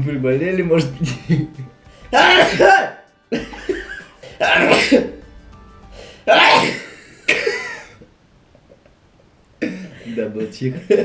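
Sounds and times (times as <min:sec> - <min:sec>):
man sneezing: 0:02.1 - 0:03.0, 0:04.3 - 0:05.2, 0:06.3 - 0:07.6.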